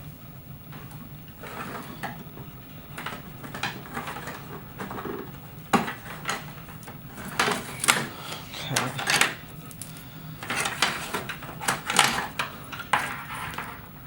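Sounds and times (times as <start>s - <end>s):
cable connectors clicking and rattling: 7.2s - 13.7s.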